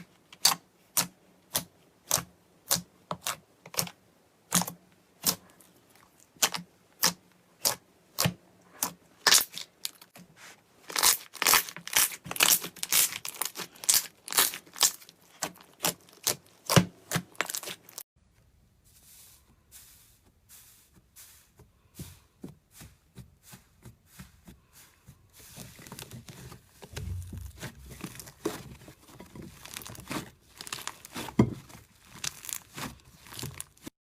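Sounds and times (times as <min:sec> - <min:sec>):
slime popping and crackling: 0:06.4 - 0:10.1, 0:10.9 - 0:18.0, 0:25.9 - 0:33.9.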